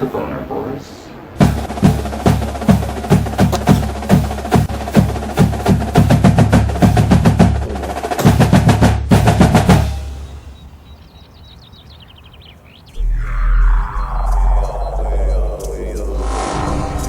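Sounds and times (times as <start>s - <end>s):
low sustained bass: 13.0s - 17.0s.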